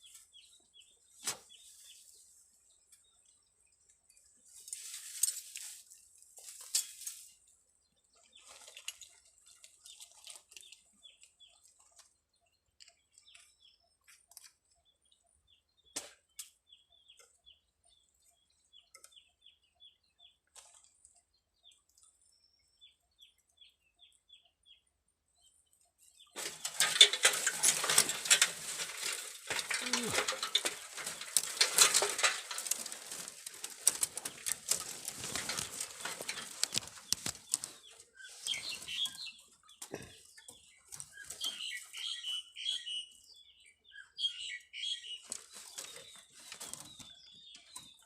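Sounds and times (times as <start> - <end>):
small bird chirping: 10.6 - 20.6, 34.2 - 48.0.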